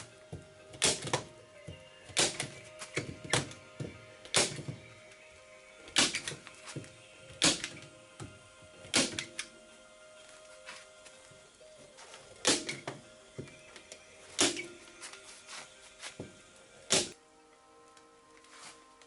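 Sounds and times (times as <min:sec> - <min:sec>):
background music sustained tones: 0:00.0 - 0:19.0.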